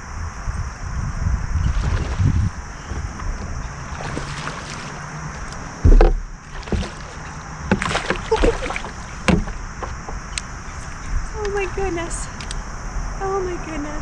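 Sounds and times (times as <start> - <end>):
knocks and clicks on a kayak: 2.9 - 10.5
loud low thump: 5.8 - 7.0, 9.2 - 10.2.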